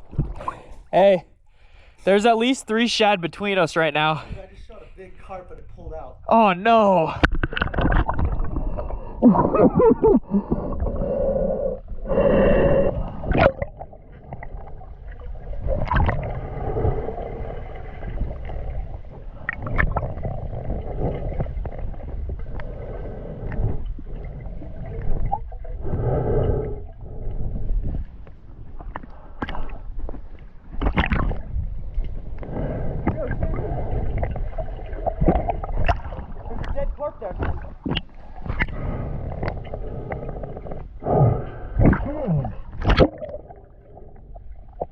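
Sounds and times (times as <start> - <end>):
water gurgling and sloshing: 0.0 - 44.9
heavy breathing through a snorkel: 10.2 - 13.4, 25.7 - 28.1, 38.5 - 42.7
muffled vocal sounds: 41.3 - 42.7.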